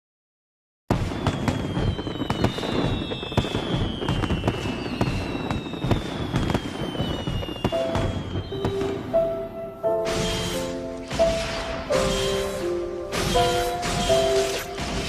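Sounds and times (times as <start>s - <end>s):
fireworks crackling: 0.9s - 15.0s
sharp bangs: 0.9s - 15.0s
falling whistles: 1.1s - 15.0s
held music notes: 7.7s - 15.0s.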